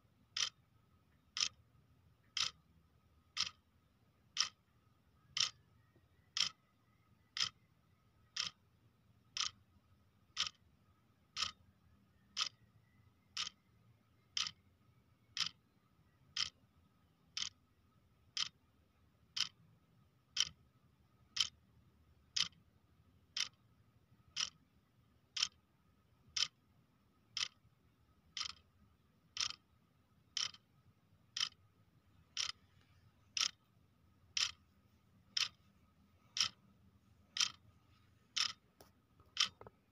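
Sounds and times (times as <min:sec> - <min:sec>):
clock ticking: 0:00.2 - 0:01.6, 0:02.2 - 0:05.6, 0:06.2 - 0:08.6, 0:09.2 - 0:09.7, 0:10.3 - 0:10.7, 0:11.3 - 0:11.6, 0:12.2 - 0:16.6, 0:17.3 - 0:17.7, 0:18.3 - 0:18.6, 0:19.3 - 0:19.6, 0:20.2 - 0:21.6, 0:22.2 - 0:22.7, 0:23.3 - 0:23.6, 0:24.2 - 0:26.6, 0:27.3 - 0:33.7, 0:34.3 - 0:36.7, 0:37.3 - 0:37.7, 0:38.4 - 0:39.9.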